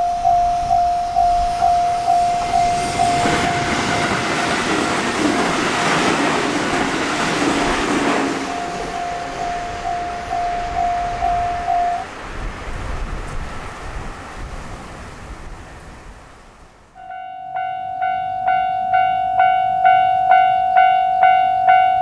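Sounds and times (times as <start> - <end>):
level-crossing alarm bell ringing: 0.0 - 12.0, 17.0 - 22.0
train passing over crossing: 0.0 - 22.0.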